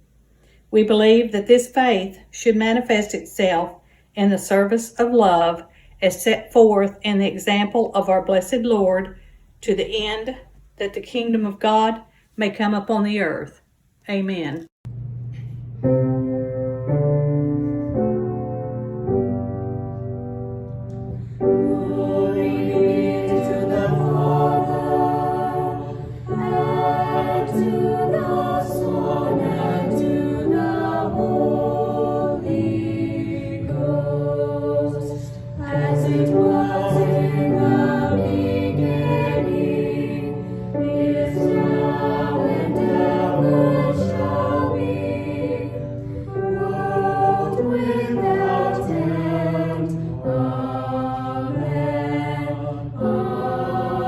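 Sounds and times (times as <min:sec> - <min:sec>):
low accompaniment: 0:14.9 - 0:54.0
choir singing a hymn: 0:17.7 - 0:54.0.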